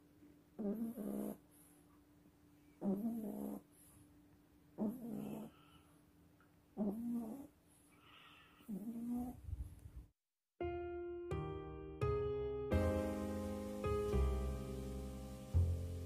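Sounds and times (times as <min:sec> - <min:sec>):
dog snoring: 0:00.6 - 0:01.5, 0:02.8 - 0:03.8, 0:04.8 - 0:05.8, 0:06.8 - 0:09.4.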